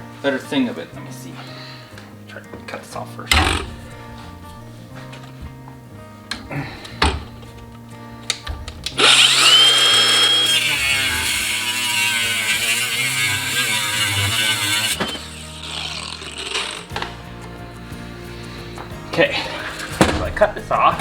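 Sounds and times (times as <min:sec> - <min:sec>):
power cutting tool whining: 0:03.3 - 0:04.7, 0:08.3 - 0:20.1.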